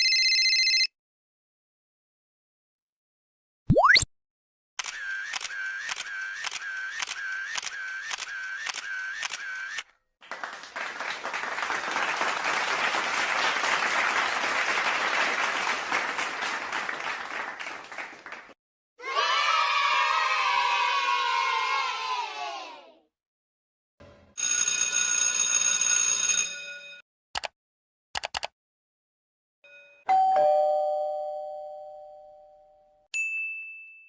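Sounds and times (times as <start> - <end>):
applause-like noise: 10.2 - 18.6.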